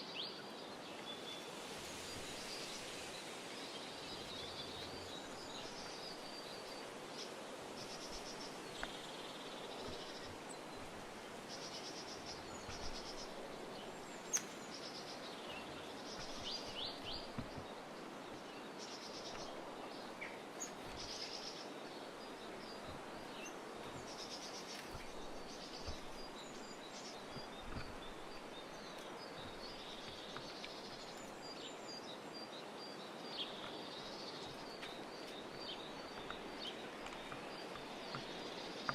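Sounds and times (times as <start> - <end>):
background hiss: 0.0 - 38.9
songbirds chirping: 0.0 - 38.9.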